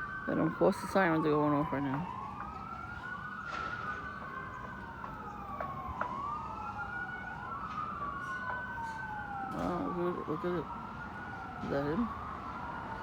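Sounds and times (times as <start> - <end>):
emergency sirens wailing: 0.0 - 13.0.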